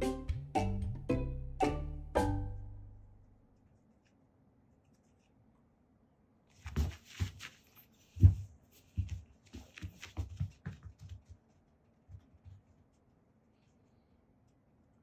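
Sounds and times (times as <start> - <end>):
cats tussling thumps and rustling: 6.6 - 12.9.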